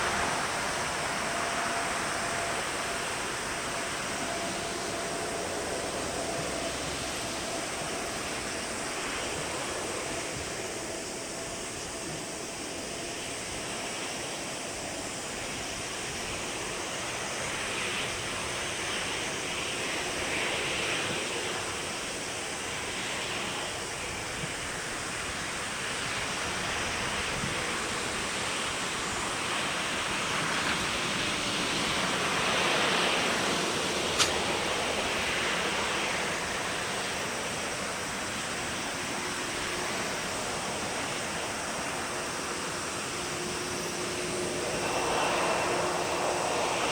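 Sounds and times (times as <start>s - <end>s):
distant jet engine roar: 0.0s - 46.9s
sharp click: 34.2s - 34.4s.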